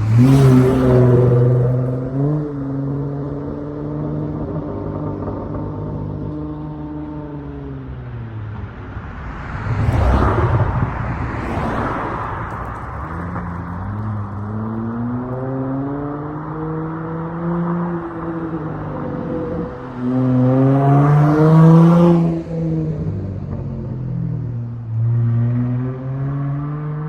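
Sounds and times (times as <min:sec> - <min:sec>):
car engine revving: 0:09.2 - 0:17.1.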